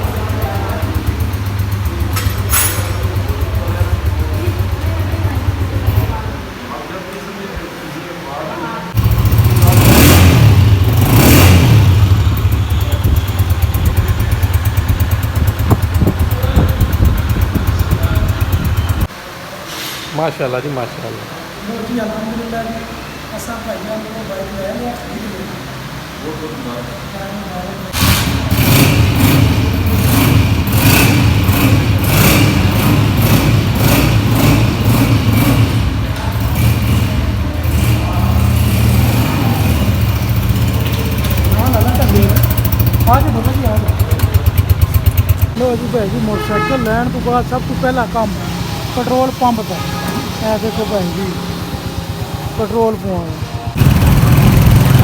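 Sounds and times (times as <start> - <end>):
motorcycle engine running: 0.0 - 6.6, 8.9 - 19.1, 27.9 - 55.0.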